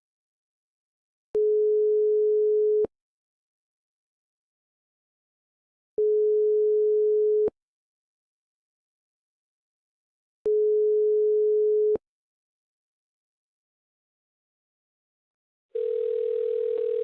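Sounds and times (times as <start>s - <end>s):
telephone ringback beep: 15.8s - 17.0s.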